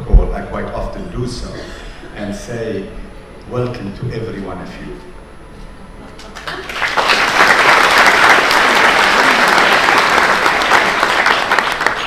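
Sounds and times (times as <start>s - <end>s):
audience applauding: 6.2s - 12.0s.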